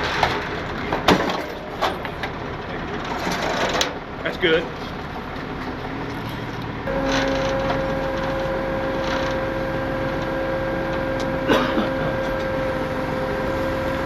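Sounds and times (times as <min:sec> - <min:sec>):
hydraulic winch whining: 0:06.0 - 0:14.0.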